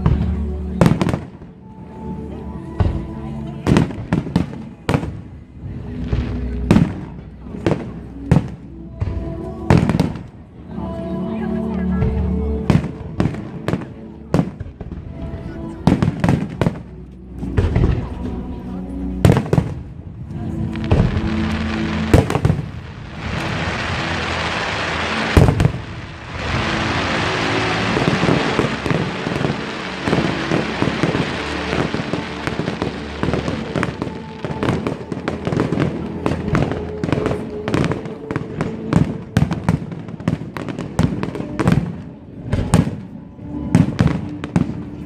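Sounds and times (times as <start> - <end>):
faint music: 0.0 - 45.0
fireworks crackle: 20.5 - 45.0.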